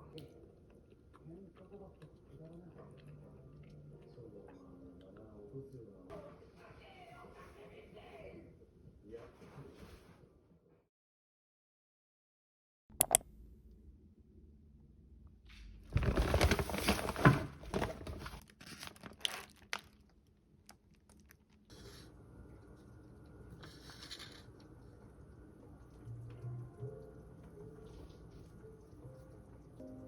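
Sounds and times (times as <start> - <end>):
sharp clicks: 13.0 - 13.2
crinkling and tearing: 15.9 - 21.6.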